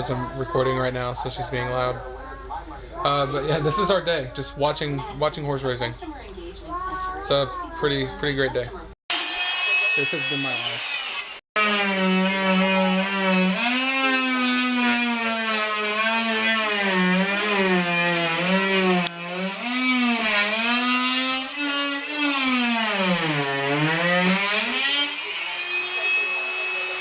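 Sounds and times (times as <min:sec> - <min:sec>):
power tool motor running: 0:09.1 - 0:27.0.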